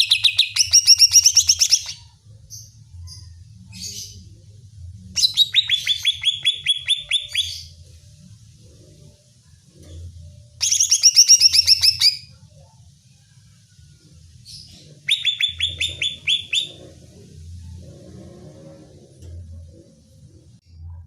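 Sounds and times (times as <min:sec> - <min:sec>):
bird song with sharp notes: 0:00.0 - 0:07.9, 0:09.7 - 0:18.2.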